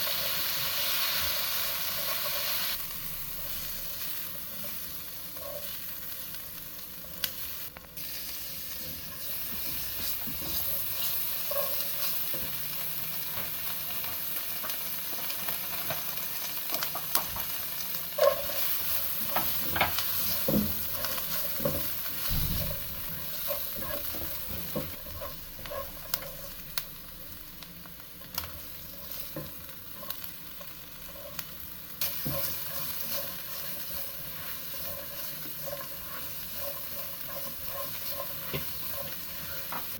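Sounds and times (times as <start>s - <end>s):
food sizzling in a pan: 0.0s - 39.9s
utensil scraping a pan: 18.1s - 26.6s, 28.9s - 39.9s.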